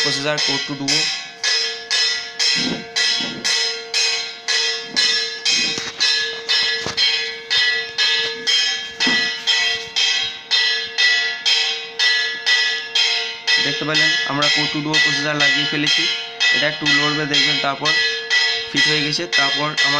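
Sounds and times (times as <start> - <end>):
steady held tone: 0.0 - 12.0
bell ringing: 0.0 - 19.9.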